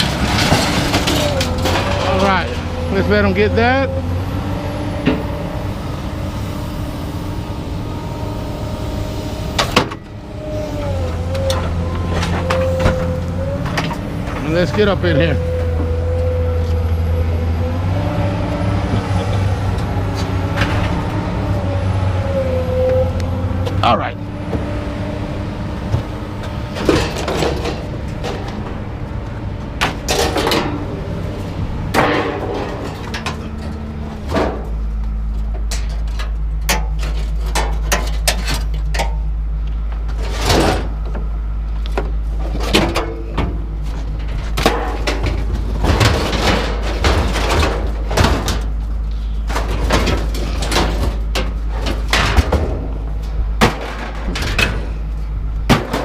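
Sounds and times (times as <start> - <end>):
scrap metal clanking and clattering: 0.0 - 4.0, 9.5 - 16.4, 25.8 - 29.0, 29.8 - 39.3, 40.0 - 41.2, 42.0 - 56.0
low engine rumble: 0.0 - 56.0.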